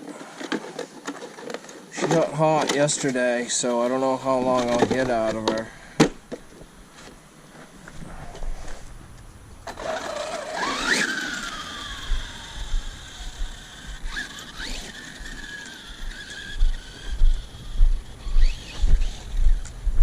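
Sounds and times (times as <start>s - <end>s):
low rumbling thumps: 7.8s - 9.9s, 11.8s - 14.1s, 16.6s - 20.0s
electric motor whining: 8.0s - 19.8s.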